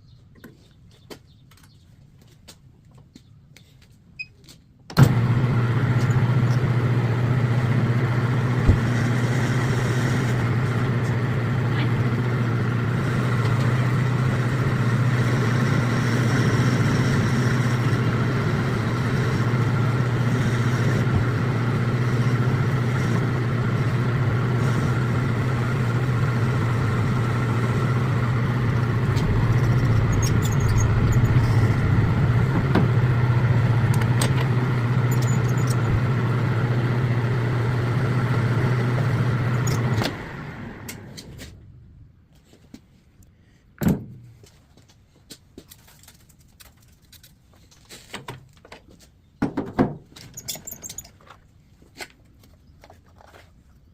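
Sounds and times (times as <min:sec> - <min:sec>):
metal lathe humming: 0:05.0 - 0:41.0.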